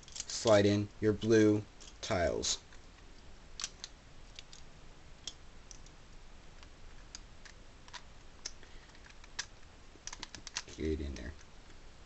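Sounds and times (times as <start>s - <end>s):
plastic puzzle pieces clicking: 3.6s - 5.9s, 7.1s - 10.7s.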